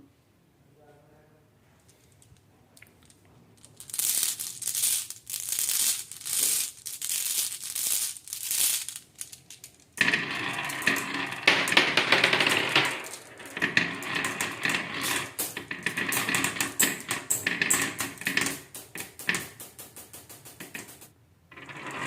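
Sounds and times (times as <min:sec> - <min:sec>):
marbles clattering down wooden run: 0:03.6 - 0:22.0.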